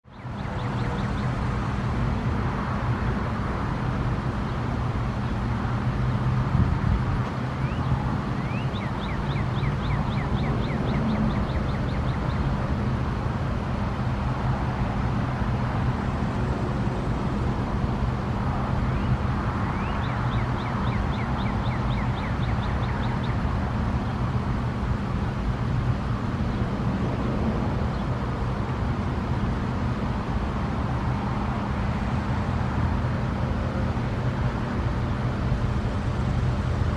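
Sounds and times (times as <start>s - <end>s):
road traffic: 0.0s - 36.9s
bird calling: 0.1s - 2.2s, 3.6s - 13.2s.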